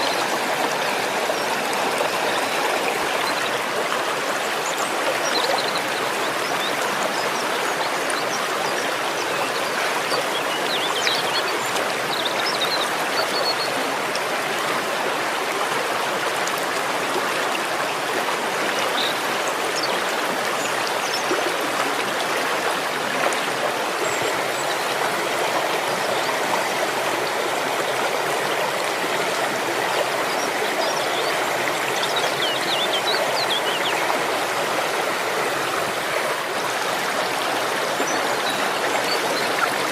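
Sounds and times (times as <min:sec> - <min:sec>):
waterfall roaring: 0:00.0 - 0:03.6.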